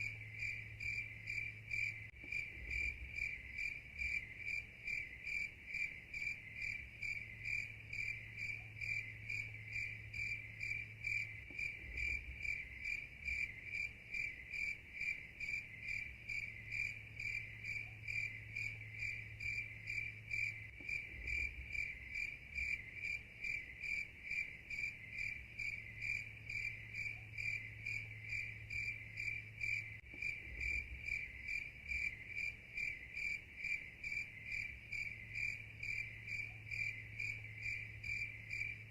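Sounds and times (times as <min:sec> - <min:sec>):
insect chirping trill: 0:00.0 - 0:38.9.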